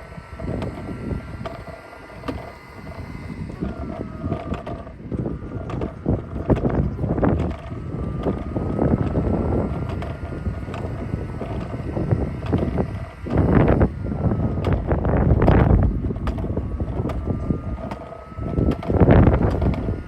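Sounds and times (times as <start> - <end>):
robot vacuum motor whine: 0.0 - 20.0
wind buffeting microphone: 0.0 - 20.0.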